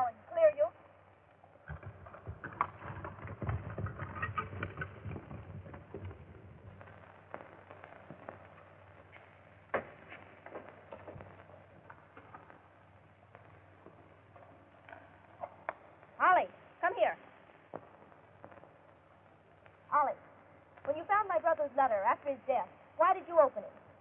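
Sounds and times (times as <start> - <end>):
horse hoofbeats: 1.6 - 12.6.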